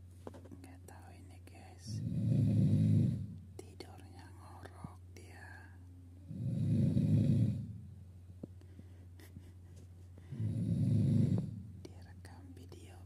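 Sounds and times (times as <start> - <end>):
man snoring loudly: 2.0 - 3.3, 6.3 - 7.8, 10.3 - 11.6.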